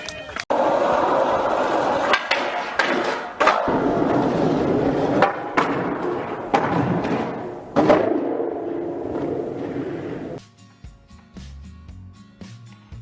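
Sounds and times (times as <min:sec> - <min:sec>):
skateboard clacking on ground: 0:00.0 - 0:10.4
skateboard wheels rolling on pavement: 0:00.5 - 0:10.4.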